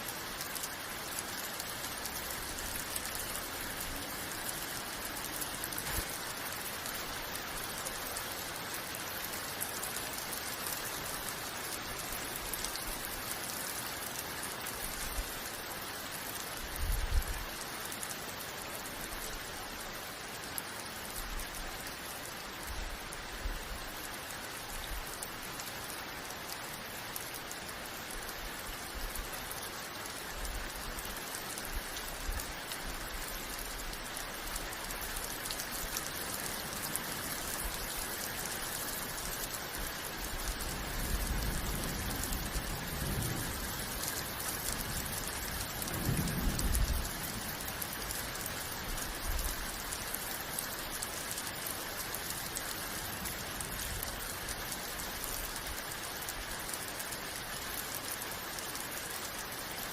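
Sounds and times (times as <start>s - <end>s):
rain falling: 0.0s - 59.9s.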